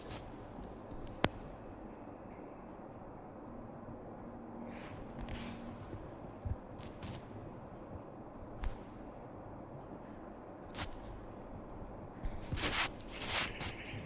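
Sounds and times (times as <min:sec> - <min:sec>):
small bird chirping: 0:00.0 - 0:01.1, 0:01.9 - 0:03.3, 0:05.5 - 0:11.7, 0:13.0 - 0:14.0.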